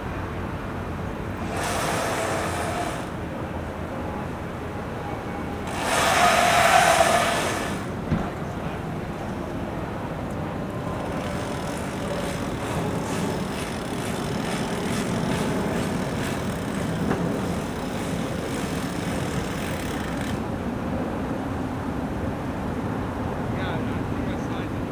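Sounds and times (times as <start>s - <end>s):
engines running: 1.1s - 4.4s, 5.4s - 20.5s.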